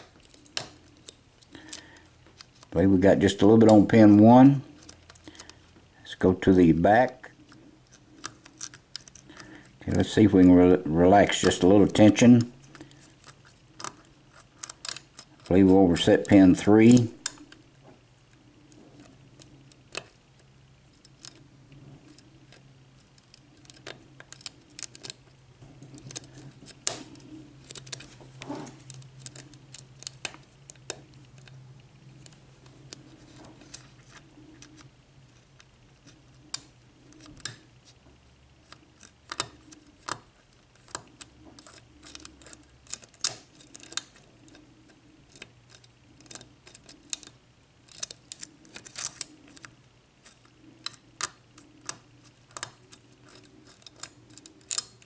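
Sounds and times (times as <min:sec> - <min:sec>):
lock pick clicking and scraping: 0:12.7 - 0:15.5, 0:22.0 - 0:25.2, 0:25.9 - 0:31.5, 0:38.6 - 0:55.0.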